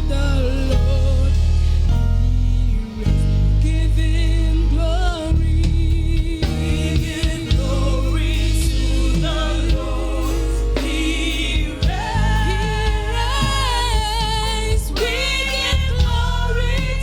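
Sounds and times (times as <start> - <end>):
deep bass line: 0.0 - 17.0
voices singing: 0.0 - 17.0.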